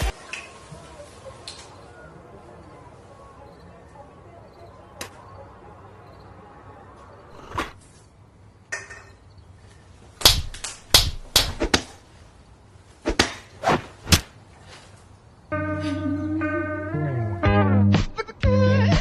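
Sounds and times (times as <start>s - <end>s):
sharp impacts: 10.2s - 12.0s.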